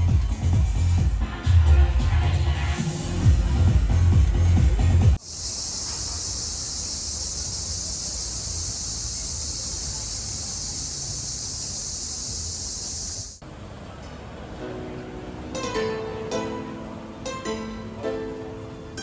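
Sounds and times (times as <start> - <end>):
high-pitched hiss: 5.2 - 13.4.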